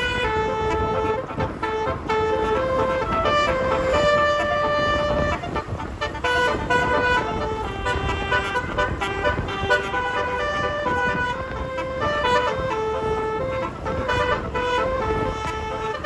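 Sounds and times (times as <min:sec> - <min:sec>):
bus musical horn tune: 0:00.0 - 0:16.0
engine and traffic rumble: 0:00.0 - 0:16.0.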